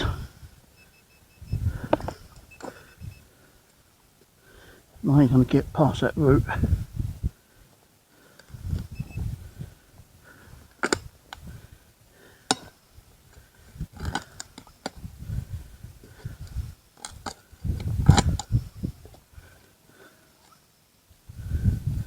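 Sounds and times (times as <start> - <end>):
digging tool clicking and scraping: 10.7 - 11.5, 12.5 - 13.4, 14.0 - 15.1.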